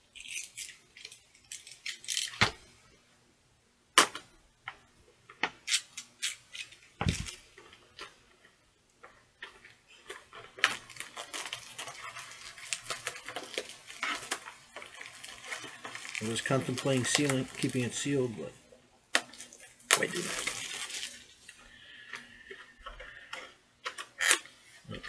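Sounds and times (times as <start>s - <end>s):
plastic packaging crinkling: 9.4s - 18.5s, 19.1s - 25.0s.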